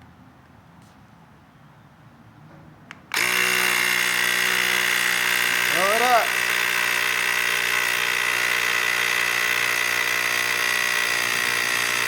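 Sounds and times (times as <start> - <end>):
electric pump motor whining: 3.1 - 12.0.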